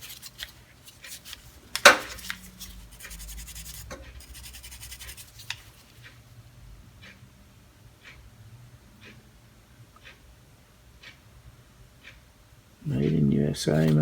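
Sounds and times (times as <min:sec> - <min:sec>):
tools scraping and rubbing: 0:00.0 - 0:06.1
metal tool clack: 0:01.8 - 0:02.3.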